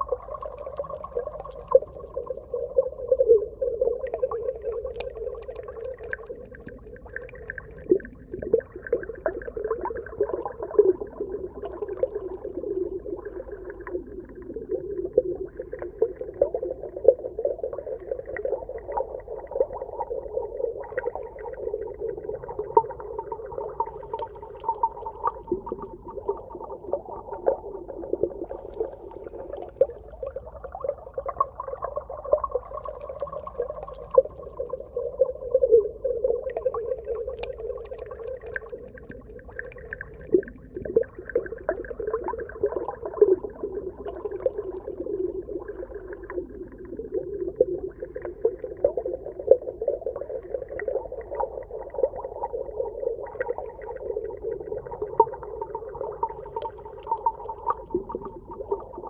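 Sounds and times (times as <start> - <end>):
muffled underwater churning: 0.0 - 59.0
small clicks and pops: 4.8 - 6.8, 37.2 - 41.0.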